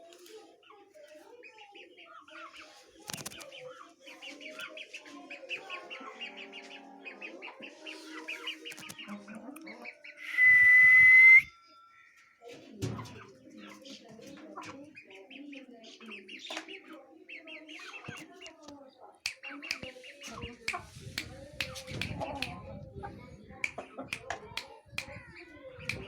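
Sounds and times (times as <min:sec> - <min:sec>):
birds chirping: 0:01.4 - 0:12.4
lower bird calls: 0:10.0 - 0:11.6
loud shrill whistle: 0:10.2 - 0:11.6.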